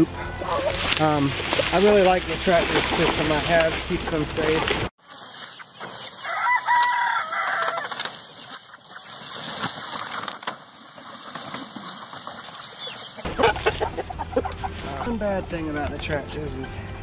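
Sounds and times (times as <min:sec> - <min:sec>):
chickens clucking: 0:00.0 - 0:10.5, 0:11.4 - 0:15.4
long pitched chicken call: 0:06.2 - 0:08.0.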